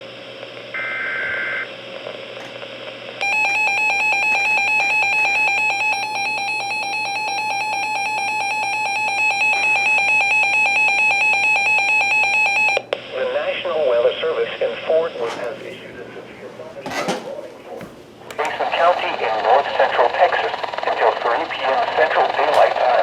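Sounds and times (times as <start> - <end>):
rapidly pulsing electronic alarm: 3.2 - 12.8
radio static: 12.6 - 23.0.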